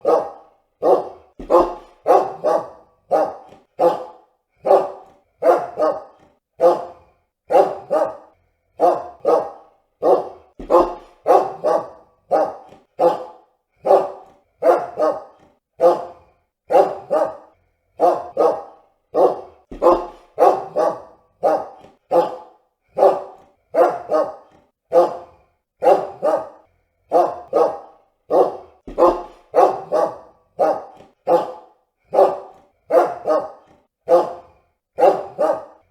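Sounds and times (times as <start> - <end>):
dog barking: 0.0 - 35.9.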